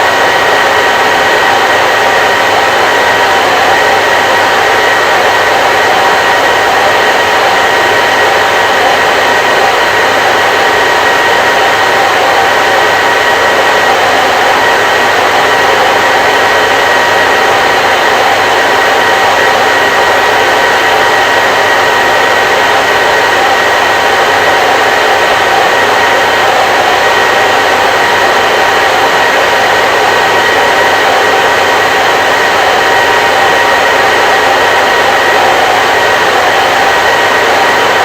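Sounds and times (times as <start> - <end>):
hair dryer air rushing: 0.0 - 38.0
hair dryer motor whine: 0.0 - 38.0.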